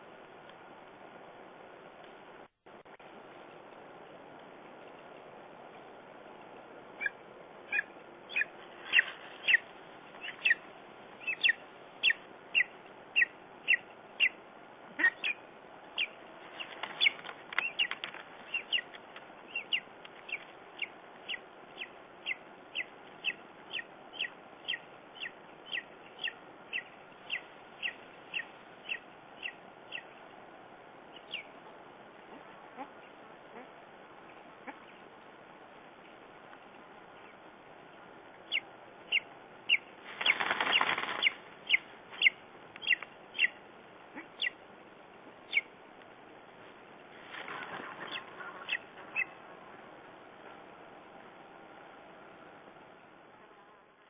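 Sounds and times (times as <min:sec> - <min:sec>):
eagle yelping: 0:11.2 - 0:15.4, 0:41.2 - 0:44.6.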